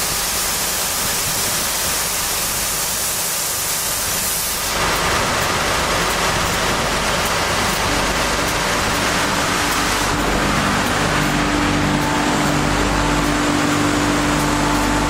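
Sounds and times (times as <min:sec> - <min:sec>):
sanding machine rushing: 0:04.6 - 0:15.0.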